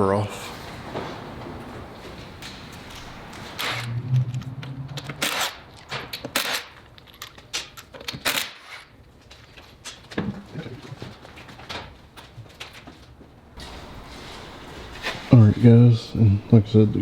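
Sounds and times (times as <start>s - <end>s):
impact wrench bursts: 5.1s - 6.9s.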